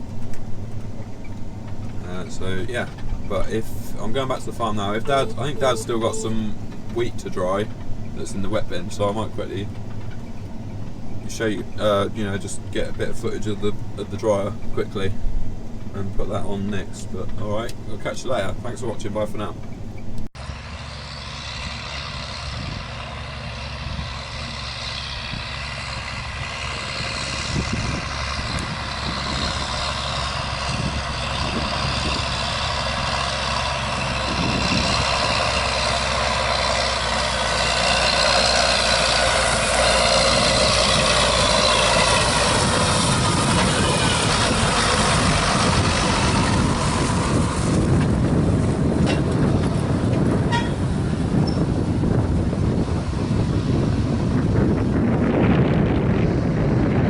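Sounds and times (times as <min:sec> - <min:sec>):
combine harvester engine whine: 0:00.0 - 0:57.0.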